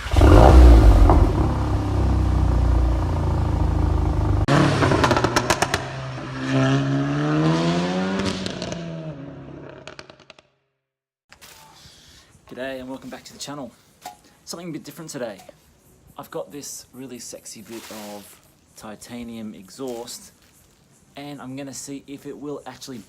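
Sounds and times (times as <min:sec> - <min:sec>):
car engine revving: 0:00.0 - 0:10.3
exhaust crackles: 0:00.0 - 0:10.4.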